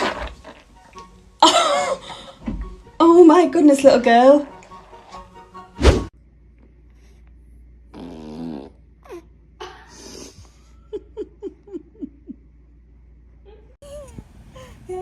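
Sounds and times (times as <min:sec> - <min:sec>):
baby farting: 0:07.9 - 0:08.8.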